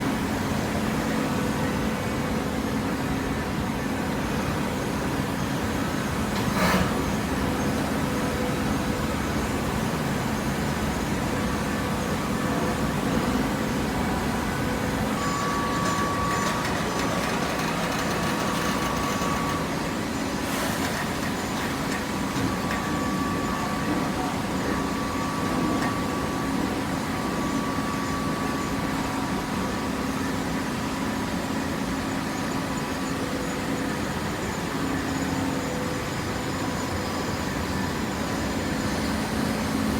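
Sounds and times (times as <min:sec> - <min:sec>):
high machine whine: 0:00.0 - 0:39.9
machine hum: 0:06.0 - 0:29.4.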